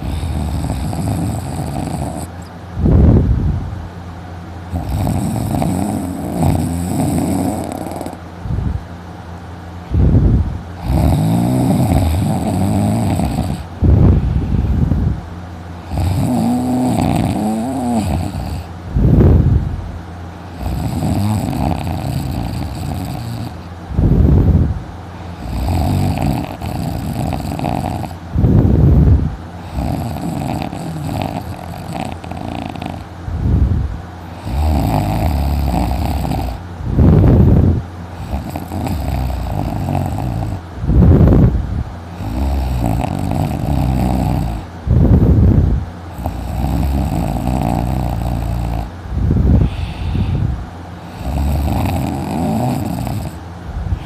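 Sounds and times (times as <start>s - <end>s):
man snoring loudly: 0.0s - 3.0s, 4.7s - 8.2s, 10.8s - 14.0s, 15.8s - 19.4s, 20.5s - 24.6s, 25.3s - 41.5s, 42.2s - 54.0s
breathing noise: 0.0s - 3.2s, 49.1s - 51.4s, 53.7s - 54.0s.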